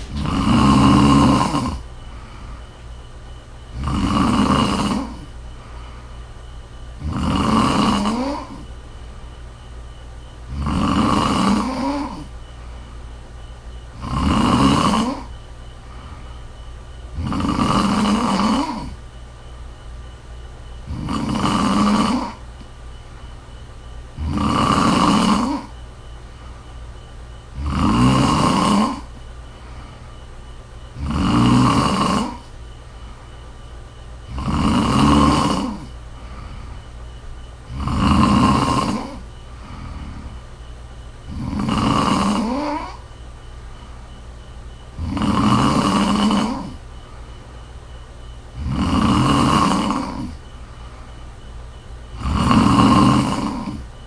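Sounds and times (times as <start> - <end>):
woman snoring: 0.0 - 2.8, 3.7 - 6.1, 7.0 - 8.7, 10.4 - 12.5, 13.9 - 16.4, 17.1 - 19.0, 20.8 - 22.6, 24.1 - 25.8, 27.5 - 30.2, 30.9 - 32.6, 34.2 - 40.6, 41.2 - 43.2, 44.9 - 47.1, 48.5 - 51.2, 52.1 - 54.0
steady low hum: 0.0 - 54.0.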